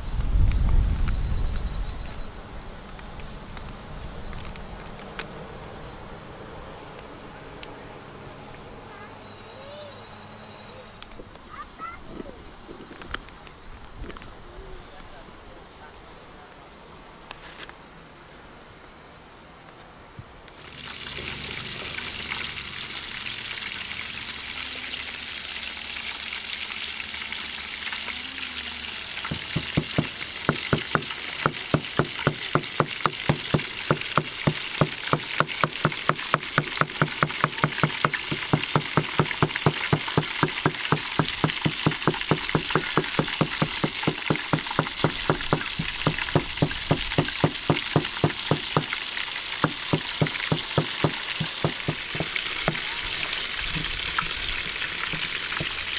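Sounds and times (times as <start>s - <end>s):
chicken sizzling in hot oil: 20.6s - 28.2s, 28.8s - 55.9s
regular knocking: 29.3s - 48.9s, 49.6s - 52.9s.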